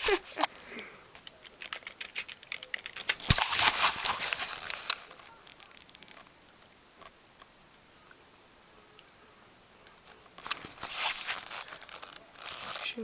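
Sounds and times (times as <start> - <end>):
crackling and rustling clicks: 1.1 - 7.6, 9.8 - 13.0.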